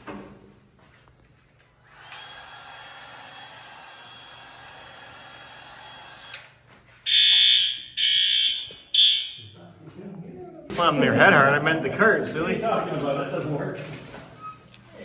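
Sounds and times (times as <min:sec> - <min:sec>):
fire alarm horn blast: 0:07.0 - 0:09.6.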